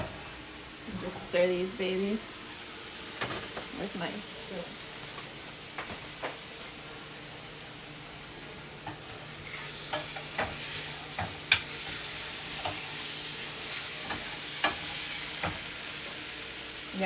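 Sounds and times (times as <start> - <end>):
mushrooms sizzling in a frying pan: 0.0 - 17.0
spoon knocking and scraping pan: 8.8 - 13.0, 14.0 - 15.7.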